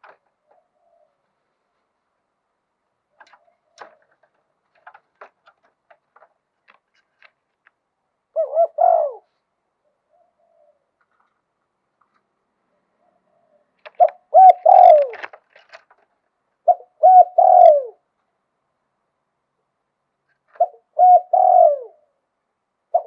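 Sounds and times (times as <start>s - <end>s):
dove cooing: 0.0s - 1.2s, 8.3s - 9.4s, 10.1s - 11.0s, 12.7s - 15.4s, 16.6s - 18.0s, 20.5s - 22.2s.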